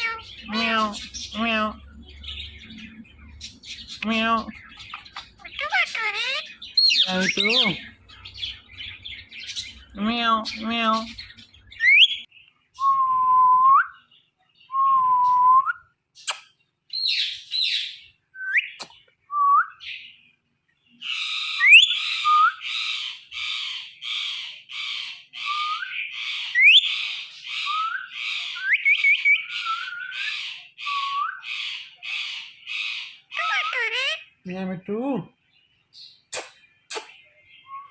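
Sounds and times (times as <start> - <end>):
raspy parrot chirps: 0.0 - 1.7, 4.0 - 7.8, 31.5 - 34.3
parrot squawks: 0.0 - 1.8, 4.0 - 7.8, 31.5 - 34.4.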